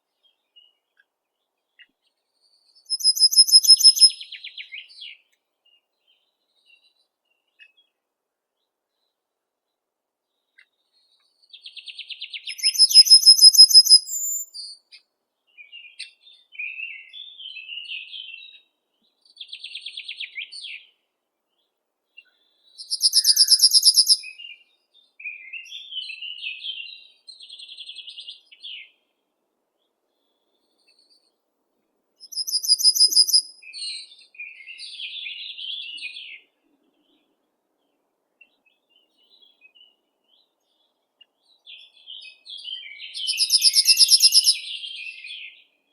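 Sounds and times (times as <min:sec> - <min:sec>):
softer lower bird chirping: 0:00.1 - 0:08.0, 0:10.3 - 0:20.8, 0:21.5 - 0:29.0, 0:32.2 - 0:45.6
songbird high trill: 0:02.8 - 0:04.3, 0:12.4 - 0:14.6, 0:22.8 - 0:24.5, 0:32.2 - 0:34.1, 0:42.8 - 0:45.2.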